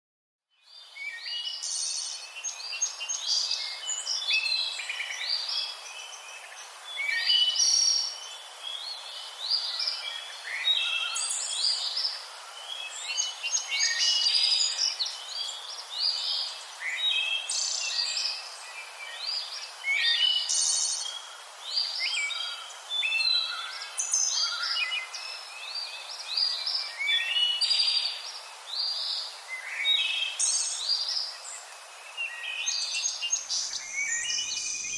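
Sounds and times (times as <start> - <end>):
steady hiss: 30.4 - 34.9
parrots chirping: 33.6 - 34.9.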